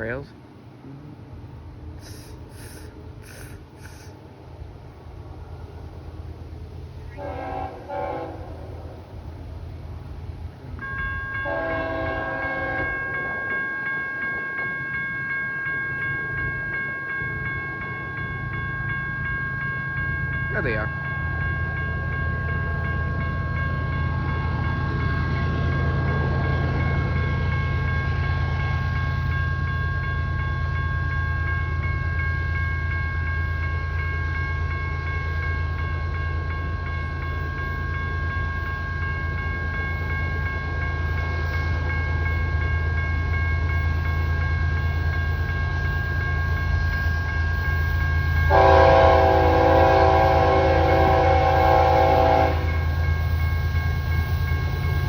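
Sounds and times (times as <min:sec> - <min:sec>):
steady high ringing: 0:01.4 - 0:55.0
train air horn chord: 0:07.1 - 0:08.6, 0:11.4 - 0:13.0, 0:48.5 - 0:52.8.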